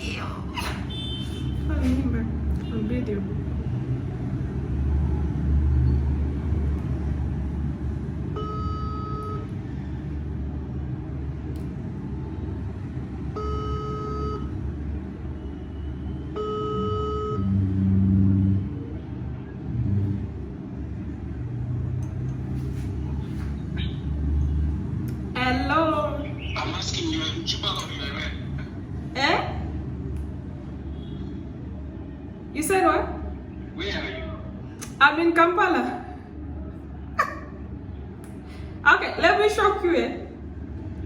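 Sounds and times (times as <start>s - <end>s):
phone ringback beeps: 8.4s - 9.5s, 13.4s - 14.5s, 16.4s - 17.5s.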